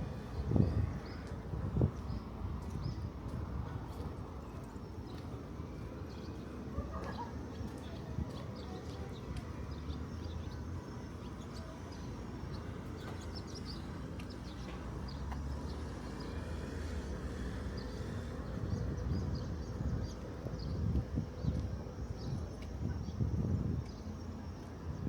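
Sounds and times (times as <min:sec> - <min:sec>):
small birds chirping: 0:11.2 - 0:21.6.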